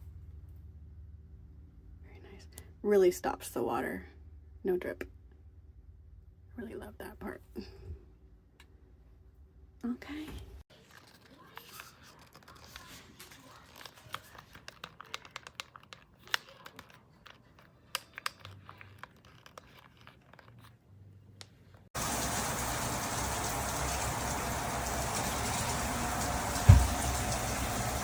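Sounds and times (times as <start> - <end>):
handling clicks and crinkling: 10.7 - 20.8
shower head water spray: 22.0 - 28.0.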